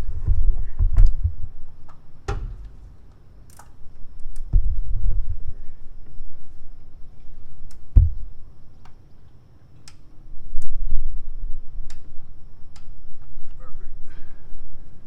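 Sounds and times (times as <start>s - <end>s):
heavy thump: 0.0s - 3.2s, 4.5s - 6.0s, 7.9s - 8.4s
low handling rumble: 0.0s - 8.8s.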